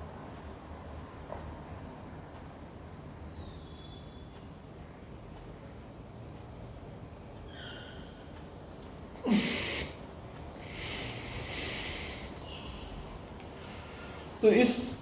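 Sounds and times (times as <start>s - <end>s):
long hissing breath: 7.5s - 8.3s, 9.2s - 10.0s, 10.6s - 14.4s
man breathing through tightened throat: 10.6s - 12.4s.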